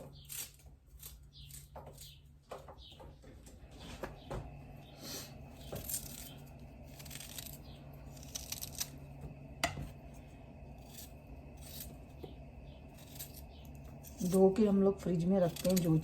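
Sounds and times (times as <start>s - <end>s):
steady low hum: 0.0s - 16.0s
small clicks and scrapes: 5.5s - 9.0s.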